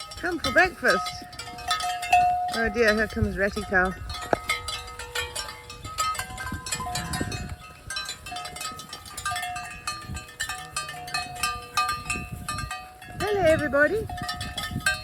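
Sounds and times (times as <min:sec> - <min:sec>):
cattle bells clanking: 0:00.0 - 0:15.0.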